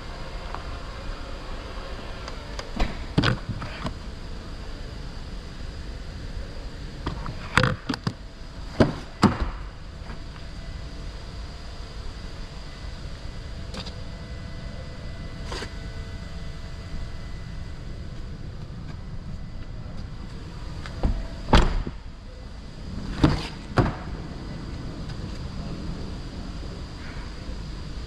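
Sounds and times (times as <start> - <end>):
steady low rumble: 0.0 - 28.0.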